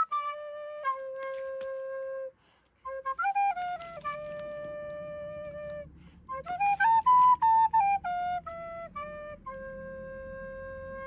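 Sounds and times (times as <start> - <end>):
slow wind instrument melody: 0.0 - 11.0
faint low hum: 0.1 - 11.0.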